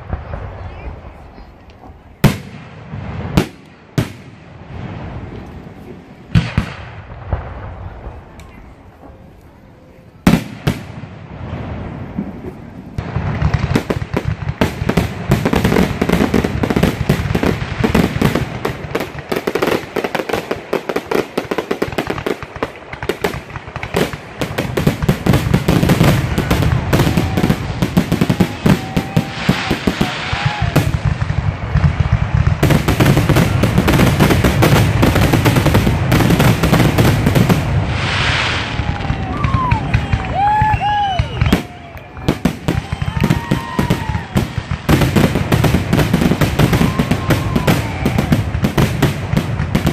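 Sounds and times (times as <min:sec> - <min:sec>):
fireworks booming and crackling: 0:00.0 - 0:49.9
firework bang: 0:01.8 - 0:09.2, 0:22.2 - 0:49.9.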